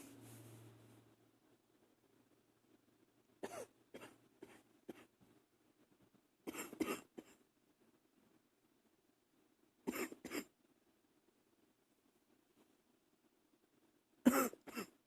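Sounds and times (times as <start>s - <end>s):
person coughing quietly: 3.4s - 5.1s, 6.5s - 7.4s, 9.9s - 10.5s, 14.3s - 15.0s.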